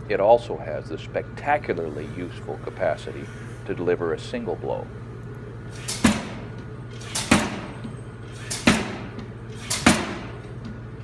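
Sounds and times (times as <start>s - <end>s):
steady low hum: 1.3s - 11.0s
power hammer blows: 5.7s - 10.8s.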